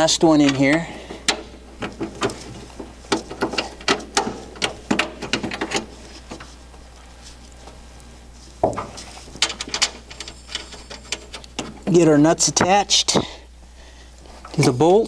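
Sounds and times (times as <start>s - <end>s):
metal hardware clicking and clinking: 8.8s - 12.8s.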